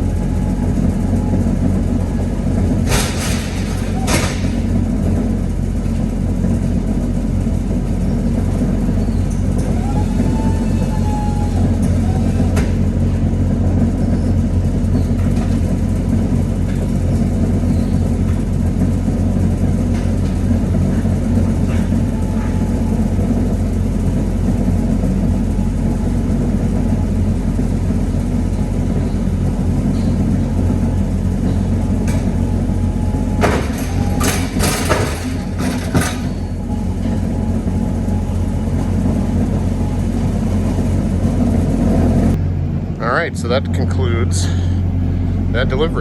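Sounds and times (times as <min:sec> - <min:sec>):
large engine idling: 0:00.0 - 0:46.0
sharp knocks and clatters: 0:02.5 - 0:06.1, 0:33.3 - 0:37.2.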